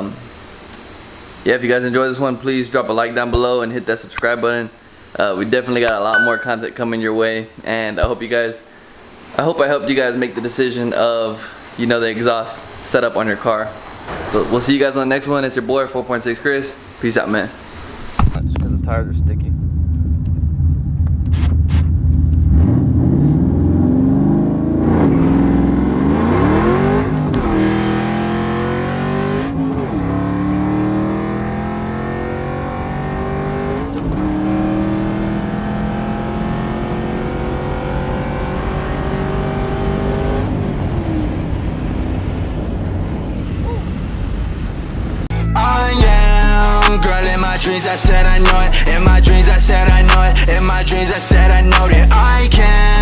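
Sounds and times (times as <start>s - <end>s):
car engine accelerating hard: 18.4s - 43.6s.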